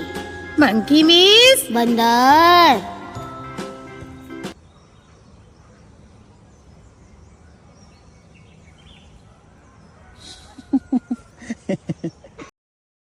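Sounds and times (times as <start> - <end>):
faint background noise: 4.6 - 12.5.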